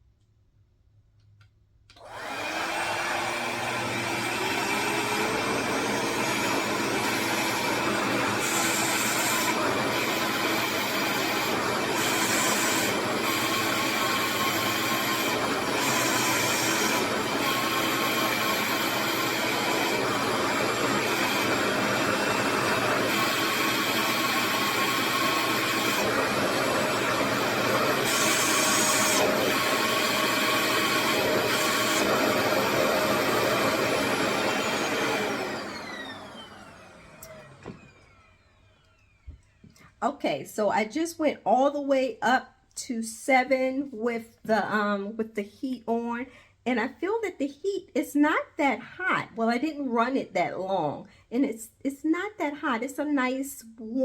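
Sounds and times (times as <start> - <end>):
hair dryer motor whining: 1.9 - 39.8.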